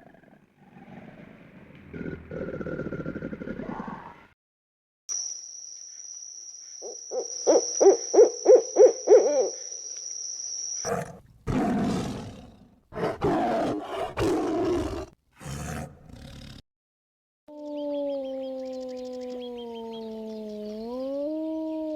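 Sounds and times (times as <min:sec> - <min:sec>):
high-pitched whine: 0:05.1 - 0:10.9
low animal hoots: 0:06.8 - 0:09.9.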